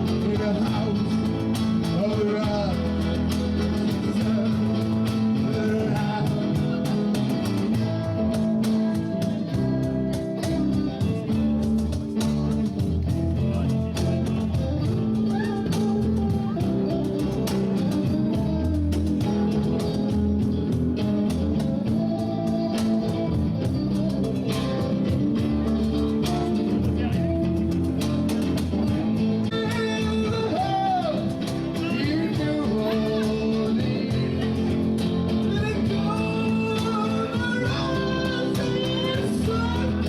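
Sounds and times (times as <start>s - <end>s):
bass guitar: 0.0s - 40.0s
lead guitar melody with bent notes: 0.0s - 40.0s
steady drums: 0.0s - 40.0s.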